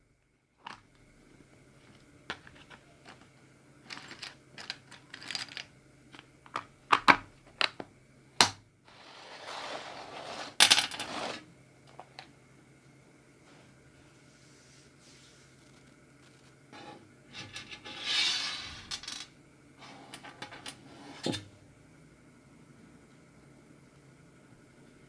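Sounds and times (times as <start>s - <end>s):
rustling and crinkling: 0.6s - 6.6s, 8.9s - 12.3s, 13.4s - 17.6s.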